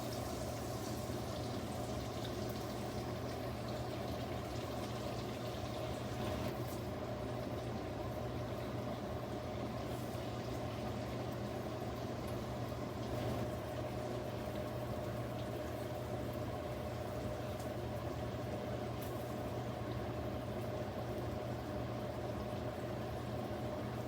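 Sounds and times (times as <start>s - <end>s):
meat sizzling in a pan: 0.0s - 6.2s.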